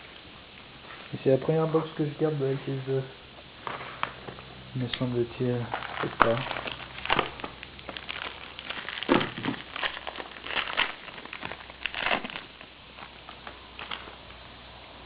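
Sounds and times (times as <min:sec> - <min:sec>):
packaging crinkling and rustling: 0:03.6 - 0:14.4.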